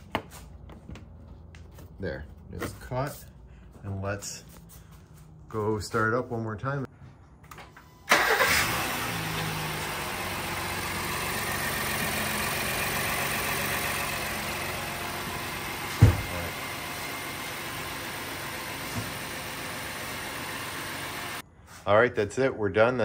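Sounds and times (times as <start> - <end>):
car engine starting and idling: 7.5 - 21.4
sharp thump: 16.0 - 16.4.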